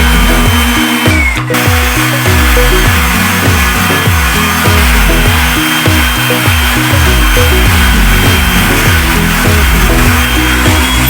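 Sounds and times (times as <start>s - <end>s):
bass-heavy background music: 0.0s - 11.0s.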